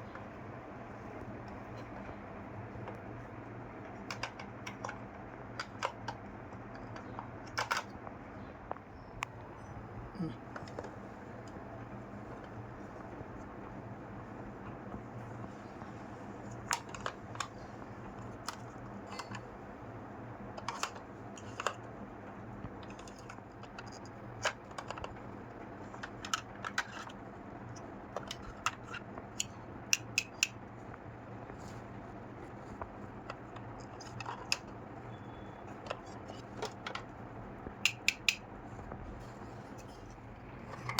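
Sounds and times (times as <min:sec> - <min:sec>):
steady low hum: 0:00.0 - 0:40.9
toy kitchen pieces clicking: 0:03.9 - 0:08.0, 0:16.5 - 0:19.6, 0:20.5 - 0:21.9, 0:22.8 - 0:30.6, 0:33.2 - 0:34.8, 0:37.8 - 0:38.4.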